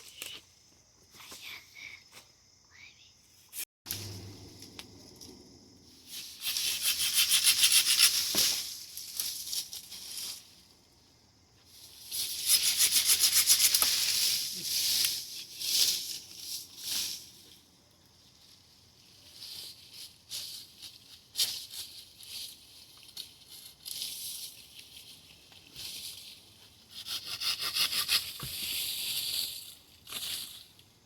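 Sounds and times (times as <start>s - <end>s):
hand saw cutting wood: 26.9s - 28.5s.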